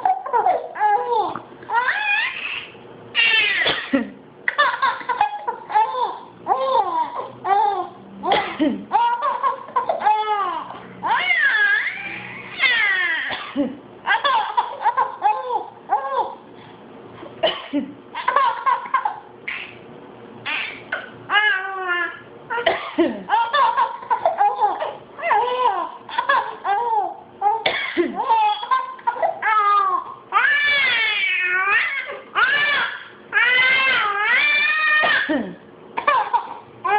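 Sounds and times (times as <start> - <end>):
person coughing: 3.6 - 4.2, 8.3 - 8.9, 13.3 - 13.8, 17.4 - 18.0, 22.6 - 23.3, 27.6 - 28.3, 35.0 - 36.3
girl laughing: 23.0 - 25.0, 28.0 - 28.5.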